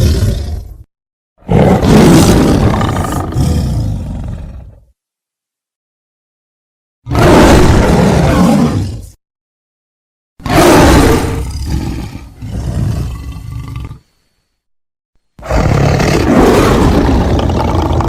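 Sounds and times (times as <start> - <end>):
big cat roaring: 0.0 - 0.8, 1.4 - 4.8, 7.1 - 9.2, 10.4 - 14.0, 15.4 - 18.0.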